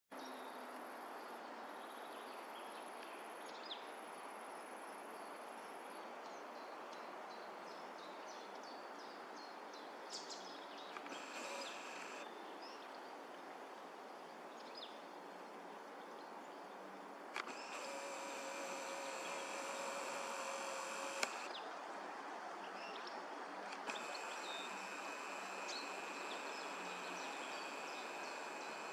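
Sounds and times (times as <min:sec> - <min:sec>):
small birds singing: 0:05.2 - 0:13.1, 0:16.0 - 0:21.7, 0:23.8 - 0:28.9.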